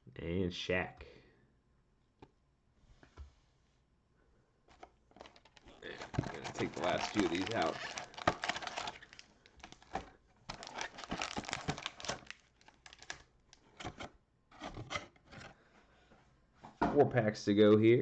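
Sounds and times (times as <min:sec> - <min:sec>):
cellophane wrappers crinkling: 0:04.7 - 0:13.7.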